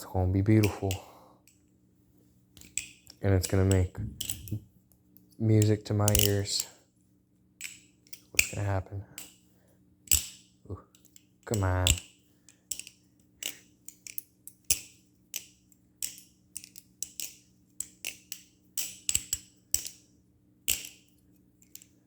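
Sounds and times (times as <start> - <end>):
butterfly knife clicking: 6.1 - 6.4.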